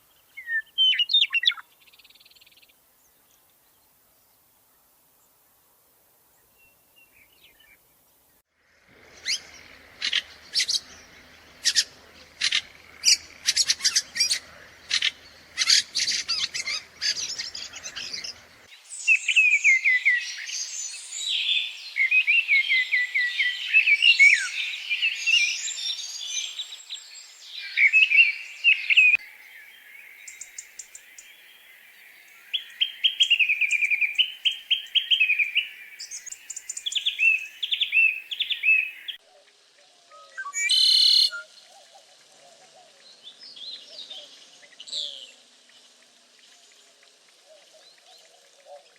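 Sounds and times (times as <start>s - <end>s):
songbird warbling song: 0.0s - 5.4s, 6.3s - 48.9s
songbird chip calls: 0.4s - 2.2s, 9.0s - 26.8s, 27.5s - 39.2s, 40.1s - 41.9s
fast bird trill: 9.1s - 18.7s.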